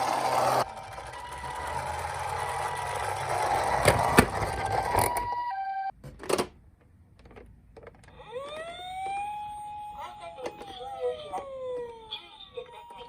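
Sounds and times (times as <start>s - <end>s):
toy cars rattling down slope: 0.0s - 5.2s.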